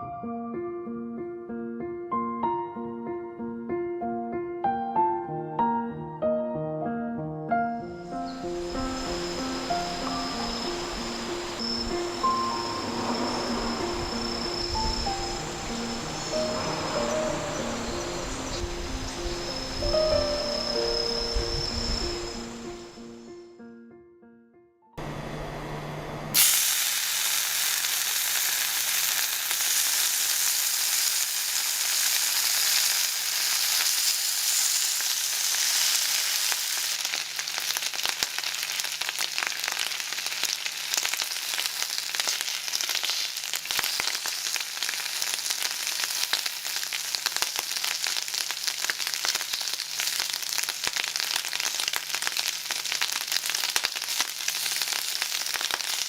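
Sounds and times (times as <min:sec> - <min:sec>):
food sizzling in hot oil: 0:08.0 - 0:23.0, 0:26.3 - 0:56.0.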